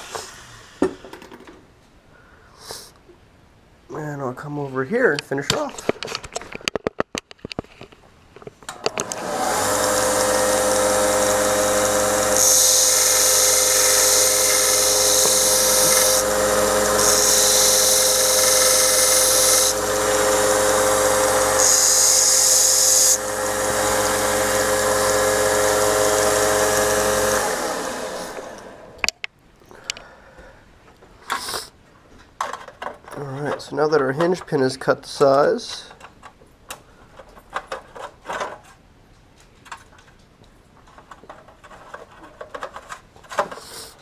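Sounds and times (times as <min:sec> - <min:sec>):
small power tool running: 0:08.8 - 0:29.1
hissing grind cutting metal: 0:09.0 - 0:29.0.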